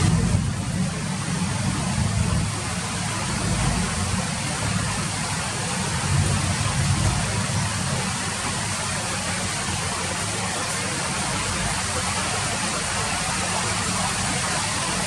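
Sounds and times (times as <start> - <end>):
low rumble: 0.0 - 2.6
rain falling: 0.0 - 15.0.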